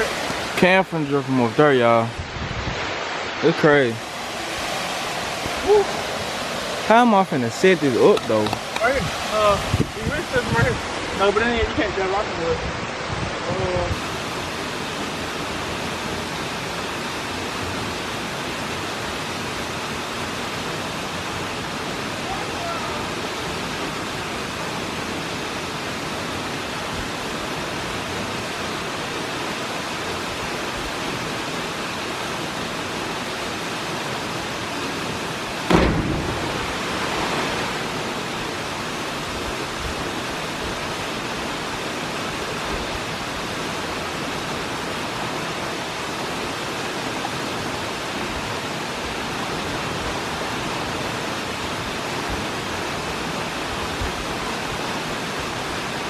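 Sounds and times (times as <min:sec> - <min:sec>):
waterfall roaring: 0:00.0 - 0:56.0
sudden loud thump: 0:35.7 - 0:37.8.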